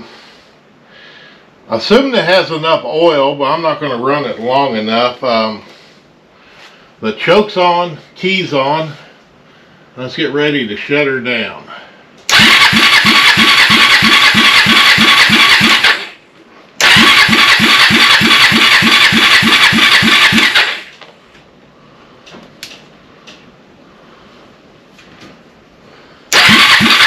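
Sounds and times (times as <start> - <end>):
engine cranking on starter: 12.3 - 16.2, 16.8 - 21.0, 26.3 - 27.0.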